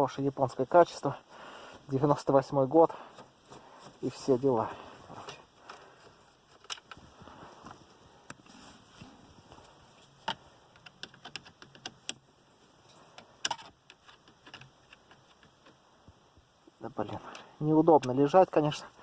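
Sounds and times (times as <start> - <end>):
faint clicks and taps of screws: 10.2 - 12.2, 13.0 - 15.8.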